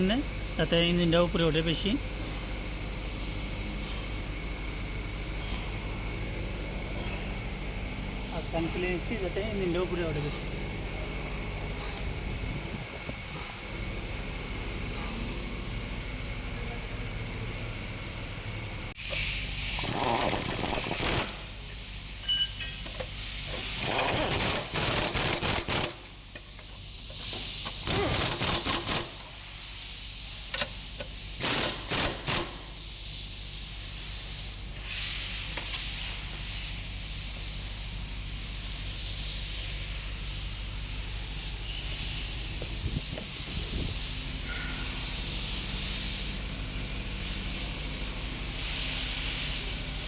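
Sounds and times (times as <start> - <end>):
pneumatic impact wrench: 19.0 - 33.4
steady high hiss: 32.6 - 50.0.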